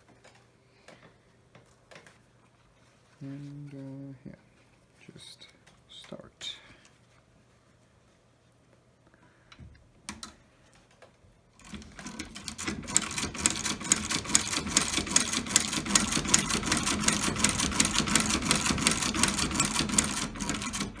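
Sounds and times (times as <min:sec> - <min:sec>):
sewing machine clatter: 0:11.6 - 0:21.0.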